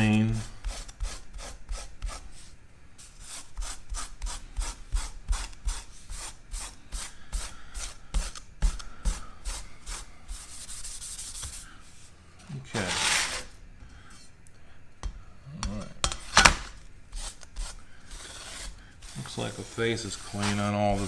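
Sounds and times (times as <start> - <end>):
scrub pad scraping saw blade: 12.7 - 13.6, 17.1 - 21.0.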